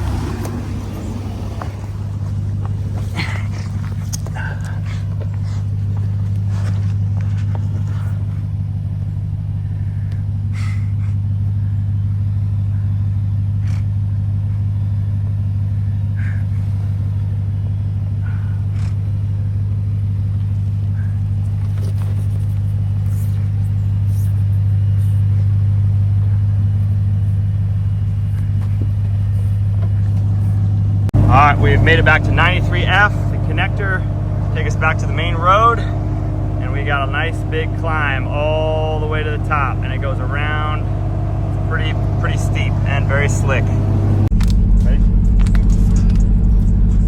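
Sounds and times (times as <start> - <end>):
truck engine droning: 0.0 - 47.0.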